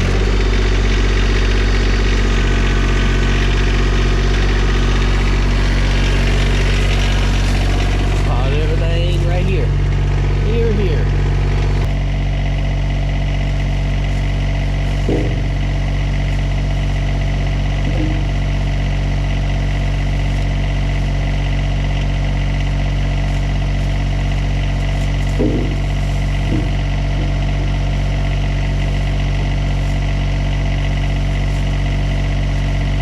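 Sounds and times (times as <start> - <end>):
diesel tractor engine idling: 0.0 - 33.0
brief knocks: 15.1 - 15.5.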